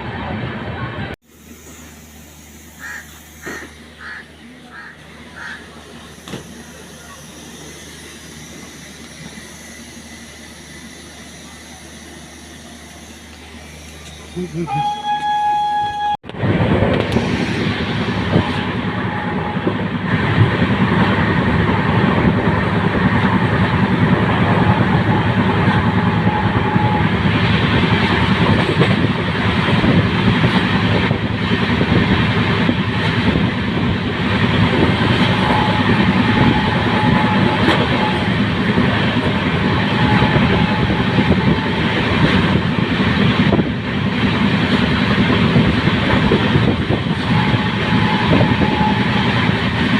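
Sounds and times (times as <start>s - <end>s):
train wheels rumbling on track: 0.0s - 49.9s.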